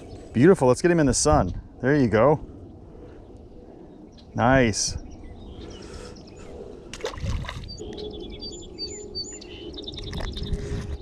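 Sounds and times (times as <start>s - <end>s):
faint outdoor background noise: 0.0s - 10.2s
small bird singing: 2.6s - 6.6s, 7.4s - 10.7s.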